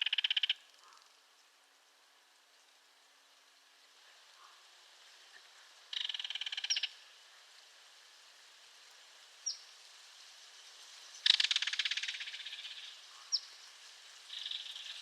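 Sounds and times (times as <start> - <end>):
kingfisher rattle call: 0.0 - 1.1, 5.9 - 6.9, 11.2 - 13.4, 14.3 - 15.0
high falling bird chirps: 5.9 - 7.0, 14.3 - 15.0.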